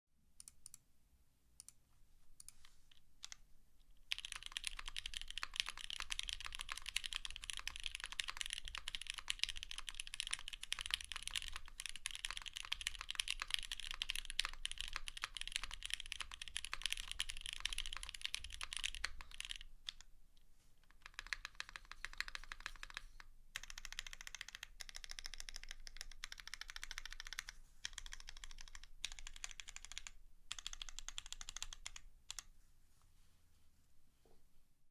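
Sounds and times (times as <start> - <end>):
mechanical keyboard typing: 2.4 - 3.4, 4.1 - 20.0, 20.9 - 32.5.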